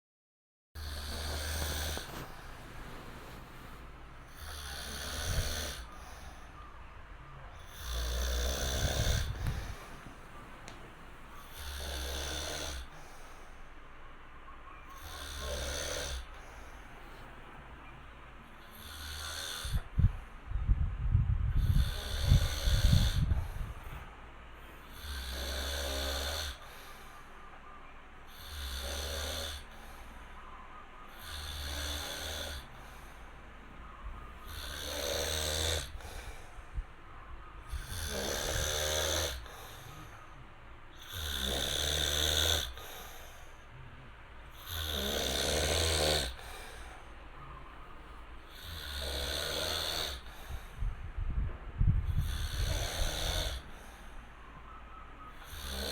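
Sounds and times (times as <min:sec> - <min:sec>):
man snoring: 0:00.8 - 0:06.7, 0:07.5 - 0:13.4, 0:14.9 - 0:17.9, 0:18.6 - 0:20.2, 0:21.5 - 0:24.0, 0:24.8 - 0:27.2, 0:28.3 - 0:30.3, 0:31.1 - 0:33.3, 0:34.0 - 0:36.9, 0:37.7 - 0:40.3, 0:41.0 - 0:50.8, 0:52.1 - 0:54.1, 0:55.3 - 0:55.9.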